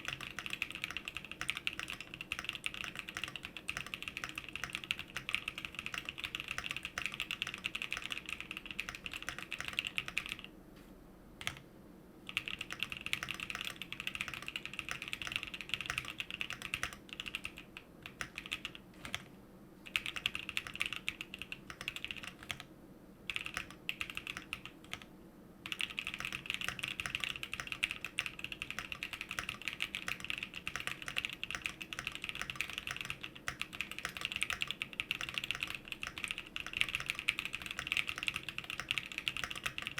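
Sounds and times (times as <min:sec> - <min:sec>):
mechanical keyboard typing: 0:00.0 - 0:10.5, 0:11.4 - 0:11.6, 0:12.3 - 0:19.3, 0:19.9 - 0:22.7, 0:23.3 - 0:39.9.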